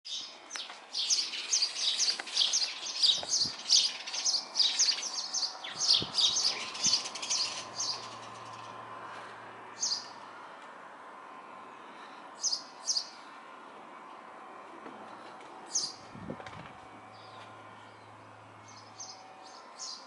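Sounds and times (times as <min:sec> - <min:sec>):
small birds chirping: 0:00.1 - 0:08.8, 0:09.8 - 0:10.2, 0:12.4 - 0:13.2, 0:15.7 - 0:16.0.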